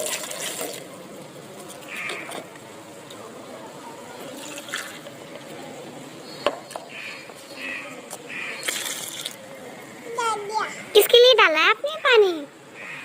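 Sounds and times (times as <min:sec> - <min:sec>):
water pouring into container: 0:00.0 - 0:00.9, 0:04.2 - 0:05.1, 0:08.6 - 0:09.4.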